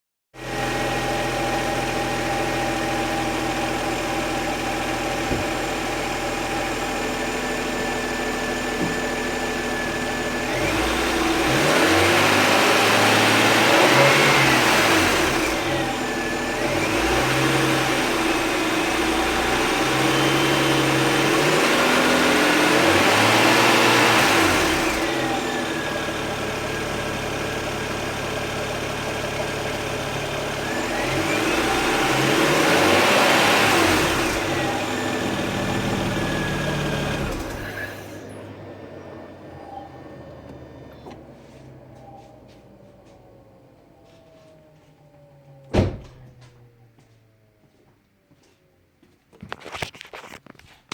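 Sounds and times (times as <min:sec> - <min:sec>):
car engine idling and revving: 0:00.4 - 0:50.6.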